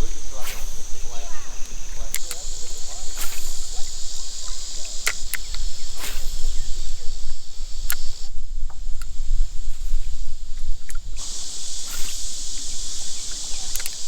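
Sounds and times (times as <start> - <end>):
sharp clicks: 0.0 - 7.0, 7.7 - 8.3, 10.8 - 14.0
insects buzzing: 0.0 - 14.0.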